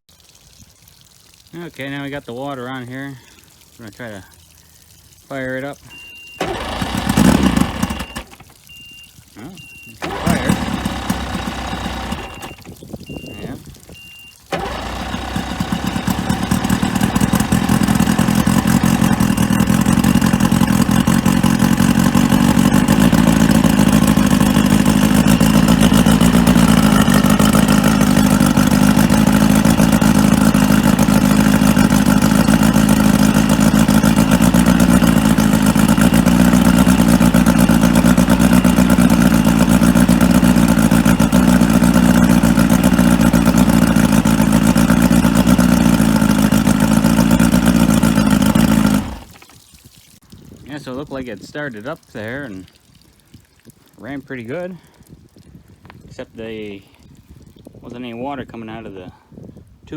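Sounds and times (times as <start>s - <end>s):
outboard motor running: 5.4s - 49.6s.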